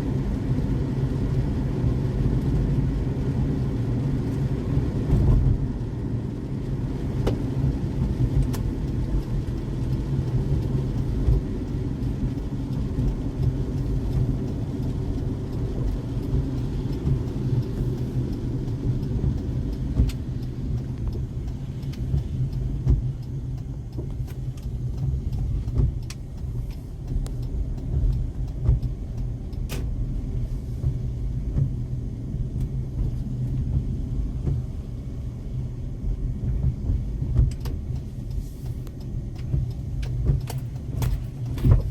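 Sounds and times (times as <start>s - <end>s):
road and tyre rumble: 0.0s - 41.9s.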